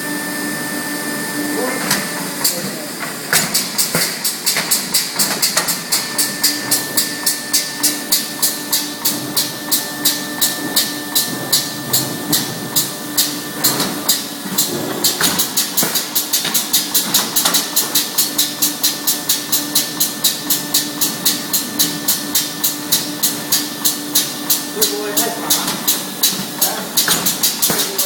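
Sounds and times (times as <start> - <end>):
machine hum: 0.0 - 28.0
clipping machine snapping: 27.0 - 28.0.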